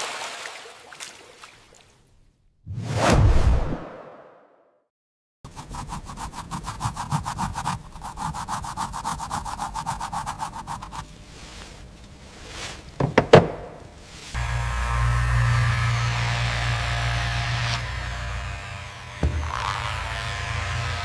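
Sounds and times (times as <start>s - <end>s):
quick whooshes: 2.7s - 4.3s
rapid rubbing strokes on a surface: 5.5s - 12.8s.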